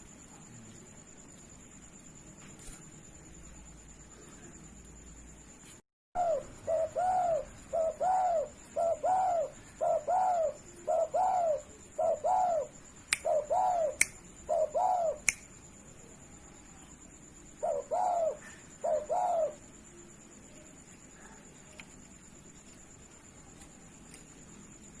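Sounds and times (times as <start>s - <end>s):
dove cooing: 6.2s - 15.2s, 17.6s - 19.6s.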